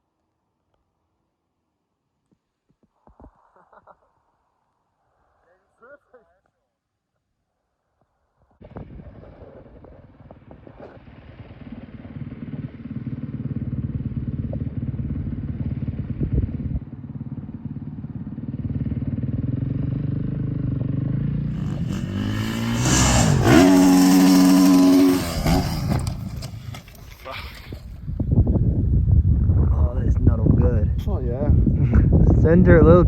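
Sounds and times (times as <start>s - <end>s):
engine running and revving: 9.2s - 27.1s.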